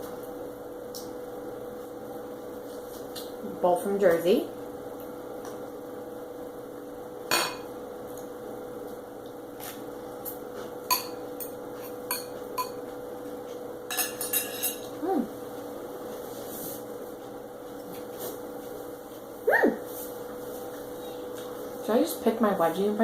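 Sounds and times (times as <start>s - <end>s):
cutlery clinking on plate: 13.9s - 14.9s.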